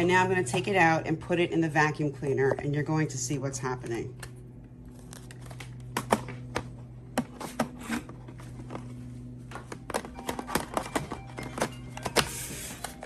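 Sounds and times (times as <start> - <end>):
steady low hum: 0.0 - 13.0
plastic clicks and knocks: 9.5 - 12.3.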